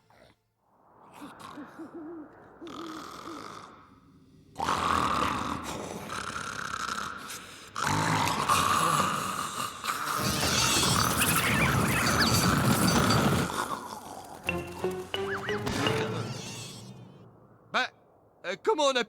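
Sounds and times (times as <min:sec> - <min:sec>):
cartoon snoring: 0:01.2 - 0:03.9, 0:04.6 - 0:11.2.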